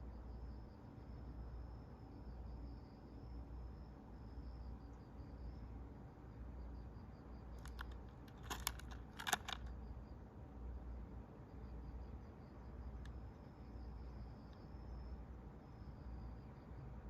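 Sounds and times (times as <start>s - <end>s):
crickets chirping: 0.0s - 17.0s
small sharp clicks and clatters: 7.6s - 9.8s.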